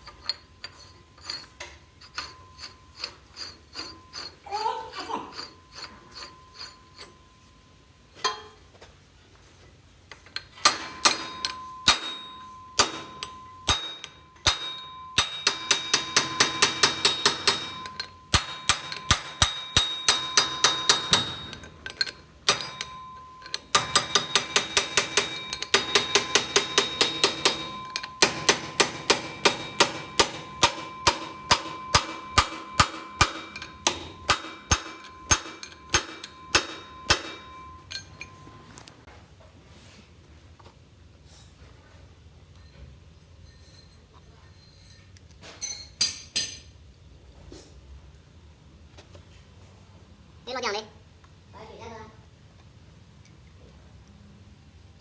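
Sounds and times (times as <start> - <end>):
hand tool clicking on metal: 0.0 - 7.2, 10.1 - 38.9.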